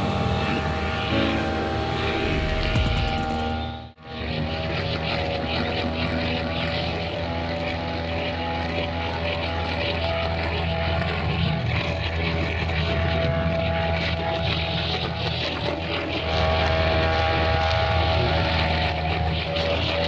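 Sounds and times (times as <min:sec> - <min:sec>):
brushcutter engine running: 0:00.0 - 0:03.8.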